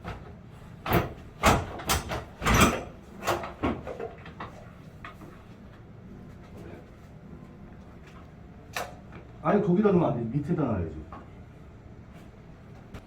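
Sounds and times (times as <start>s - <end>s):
air conditioner knocks and clanks: 0.0s - 5.8s.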